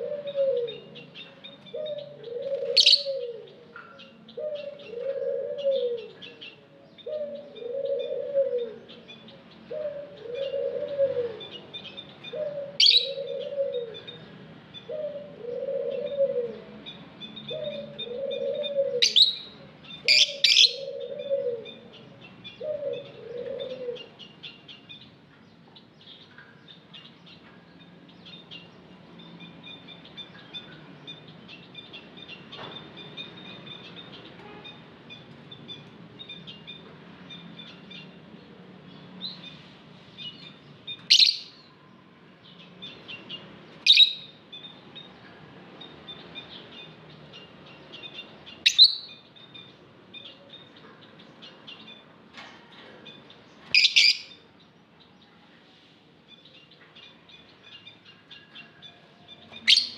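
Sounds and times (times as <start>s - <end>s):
bird cooing: 0.0s - 24.2s, 41.1s - 41.5s, 43.9s - 44.3s, 53.8s - 54.4s, 59.7s - 59.9s
loud sharp bird calls: 0.0s - 25.2s, 25.8s - 41.8s, 42.5s - 55.0s, 56.4s - 59.9s
lovebirds chirping: 0.0s - 59.9s.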